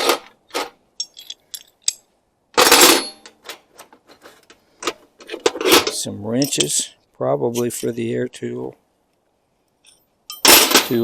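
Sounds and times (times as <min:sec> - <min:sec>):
metal tools clinking in toolbox: 0:00.0 - 0:02.0, 0:05.2 - 0:06.9, 0:09.8 - 0:11.0
metal pieces rattling: 0:01.0 - 0:02.0.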